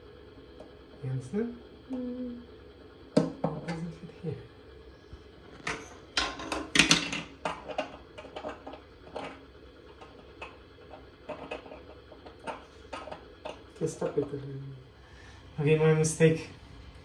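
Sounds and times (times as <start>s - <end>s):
tap fittings clicking and scraping: 7.4s - 13.6s.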